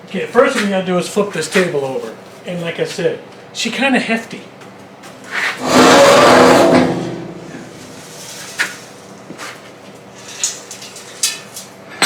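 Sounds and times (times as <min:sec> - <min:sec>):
steel table scraping: 0:05.3 - 0:11.6.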